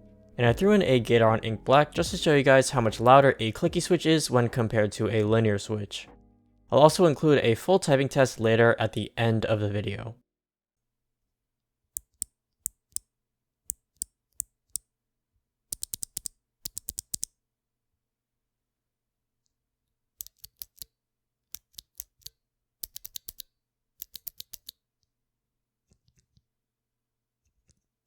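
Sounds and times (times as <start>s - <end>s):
mechanical keyboard clicking: 15.8s - 17.3s, 21.6s - 23.4s, 24.0s - 24.7s.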